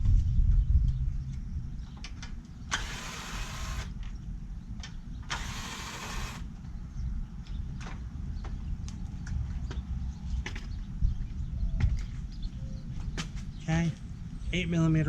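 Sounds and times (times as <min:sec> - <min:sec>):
ratchet wrench rasping: 0:02.7 - 0:03.9, 0:05.3 - 0:06.4.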